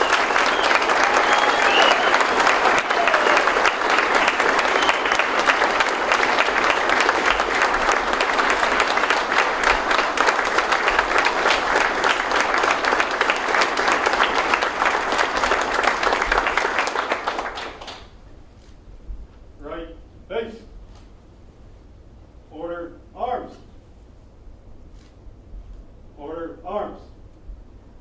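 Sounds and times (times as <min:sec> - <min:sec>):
large audience applauding: 0:00.0 - 0:18.3.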